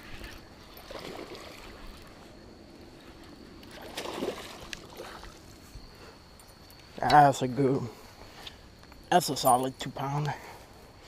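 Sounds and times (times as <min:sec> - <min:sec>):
faint water splashing: 0:00.0 - 0:02.3, 0:03.0 - 0:05.8.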